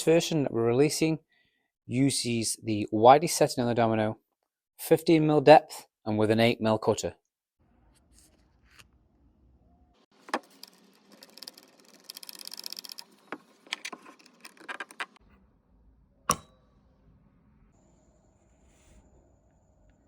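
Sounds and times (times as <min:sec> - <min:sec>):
fast rattling: 0:10.2 - 0:13.2.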